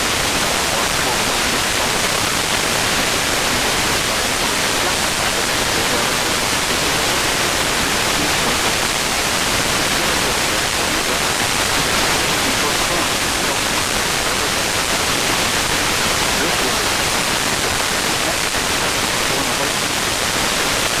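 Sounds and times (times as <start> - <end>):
radio static hiss: 0.0 - 21.0.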